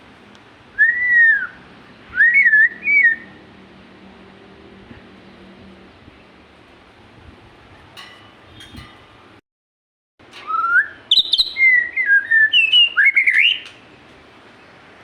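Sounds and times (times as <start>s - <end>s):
songbird whistling: 0.8s - 3.4s, 10.4s - 13.8s.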